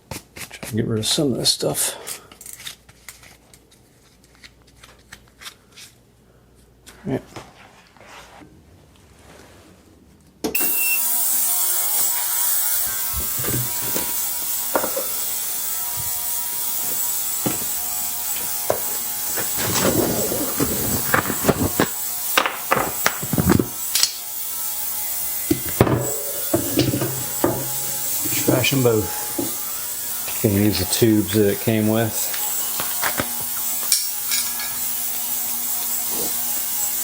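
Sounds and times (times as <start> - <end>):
ultrasonic cleaner hissing buzz: 10.6 - 37.0
clicks and knocks of parts handled: 32.3 - 34.6.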